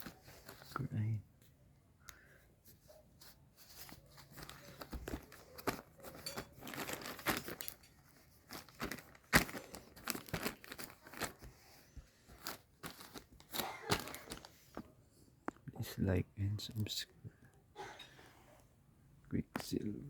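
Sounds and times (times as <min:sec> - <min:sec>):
packaging crinkling and rustling: 0:00.0 - 0:00.9, 0:03.2 - 0:15.0.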